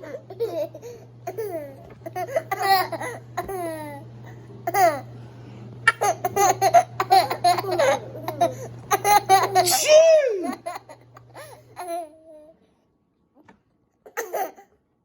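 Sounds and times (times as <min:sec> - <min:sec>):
babies laughing: 0:05.9 - 0:12.1.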